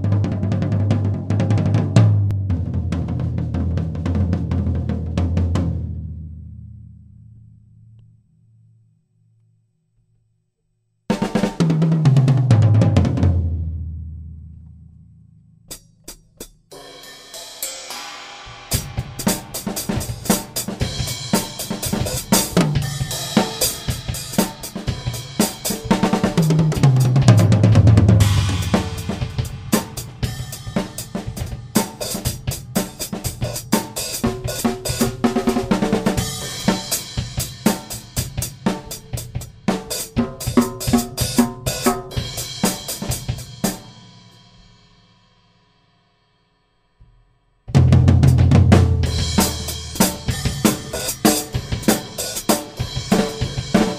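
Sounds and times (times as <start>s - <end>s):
drum kit playing: 0.0s - 6.6s, 11.1s - 14.5s, 15.7s - 44.8s, 47.7s - 53.9s
tom fill: 15.7s - 44.2s, 47.0s - 53.9s
cymbal crashes: 16.8s - 26.0s, 28.2s - 33.0s.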